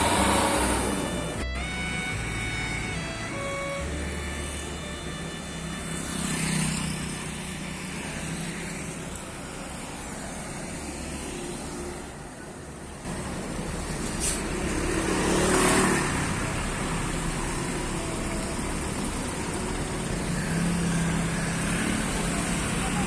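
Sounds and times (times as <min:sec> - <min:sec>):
bus engine running: 0:00.0 - 0:23.0
road traffic noise: 0:00.0 - 0:23.0.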